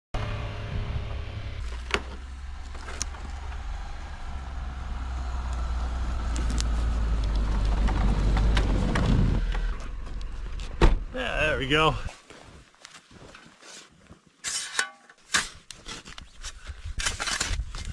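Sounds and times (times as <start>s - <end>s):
car driving rumble: 0.2s - 12.1s.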